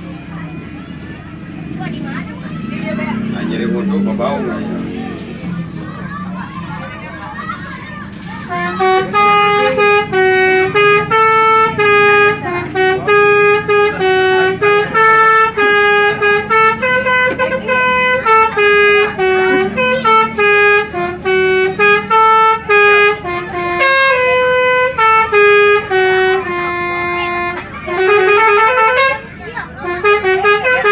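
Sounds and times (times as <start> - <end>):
low engine hum: 0.0 - 30.9
bus horn playing a tune: 7.4 - 30.9.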